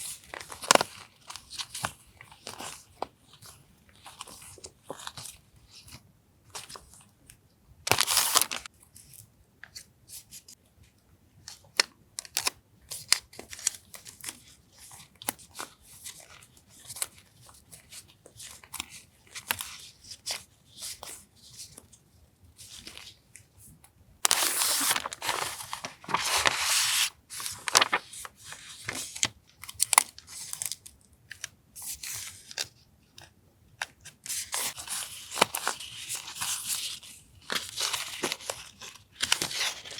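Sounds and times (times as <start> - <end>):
packaging crinkling and rustling: 0.1 - 5.2, 7.9 - 8.7, 24.2 - 30.8, 34.4 - 39.9.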